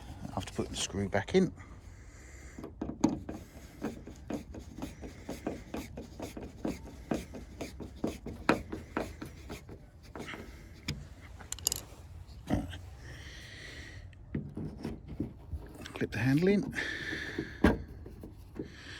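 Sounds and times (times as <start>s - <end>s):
car door handle clicks and rubbing: 2.6s - 11.0s.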